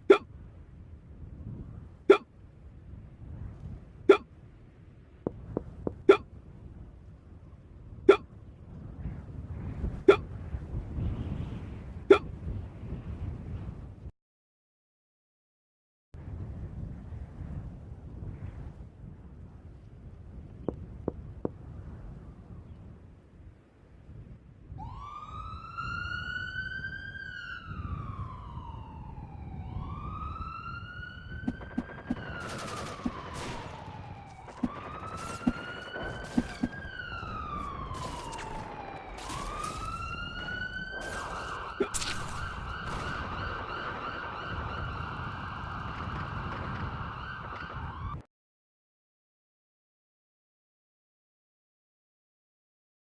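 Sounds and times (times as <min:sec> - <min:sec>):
emergency vehicle siren wailing: 0:24.8 - 0:48.3.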